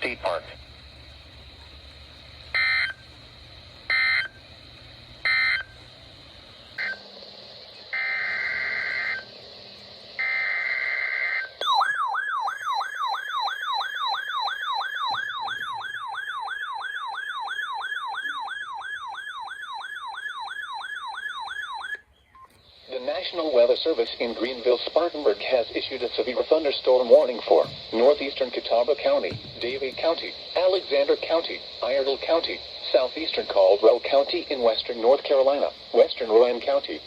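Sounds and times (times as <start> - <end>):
screeching digital data bursts: 6.8 - 7.1, 7.8 - 9.4, 10.2 - 16.6.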